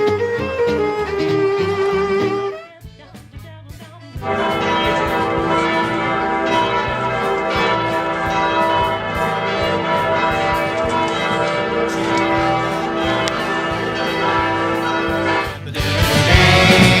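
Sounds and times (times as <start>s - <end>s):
church bells ringing: 4.2s - 17.0s
instrumental music: 4.2s - 17.0s.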